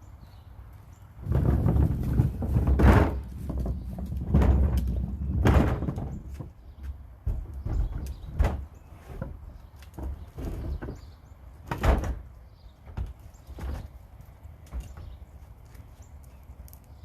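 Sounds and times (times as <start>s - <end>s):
knocks and thumps: 1.2s - 12.3s.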